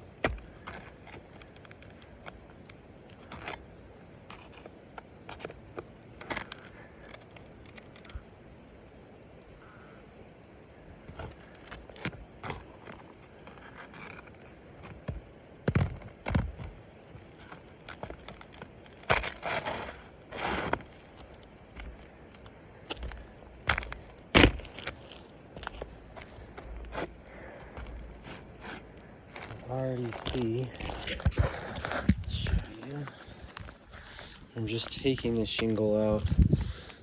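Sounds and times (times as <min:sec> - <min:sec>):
tool scraping on shingles: 0:00.0 - 0:08.1, 0:11.1 - 0:36.8.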